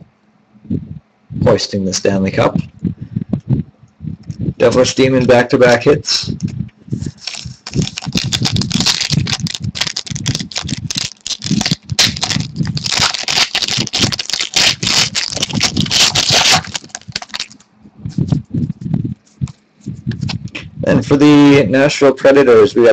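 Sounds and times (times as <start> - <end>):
trading cards and packaging rustling: 7.0 - 17.7.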